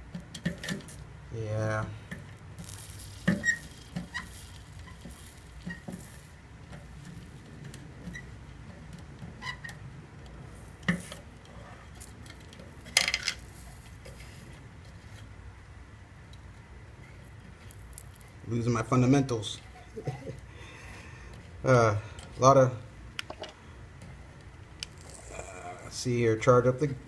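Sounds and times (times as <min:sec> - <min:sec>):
soldering tip tapping and scraping metal: 0:02.1 - 0:11.3.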